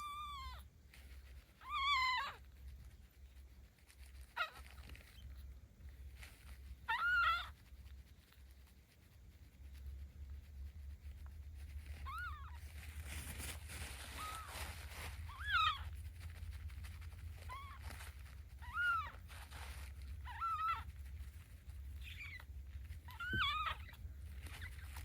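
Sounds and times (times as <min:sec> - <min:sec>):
low steady rumble: 0:00.0 - 0:25.0
kitten mewing: 0:22.0 - 0:25.0.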